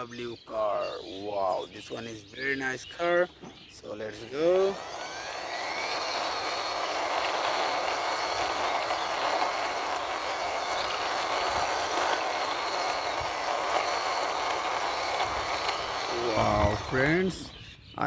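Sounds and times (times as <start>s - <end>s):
toy car wheels rolling on ground: 4.2s - 17.5s.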